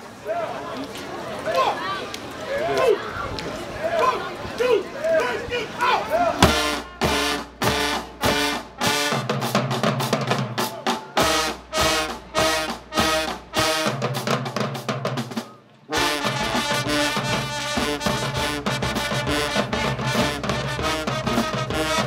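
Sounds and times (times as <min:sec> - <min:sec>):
marching band brass chords: 0:04.0 - 0:22.0
snare and bass drums: 0:06.4 - 0:22.0.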